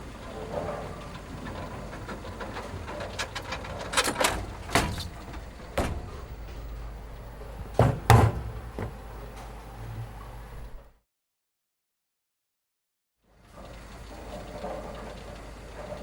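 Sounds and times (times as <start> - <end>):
sharp knocks: 4.7 - 6.7, 7.6 - 9.0.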